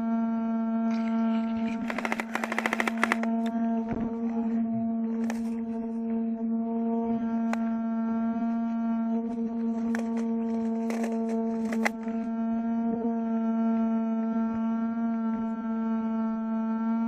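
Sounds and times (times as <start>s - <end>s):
small fan humming: 1.0s - 4.4s, 9.3s - 12.8s.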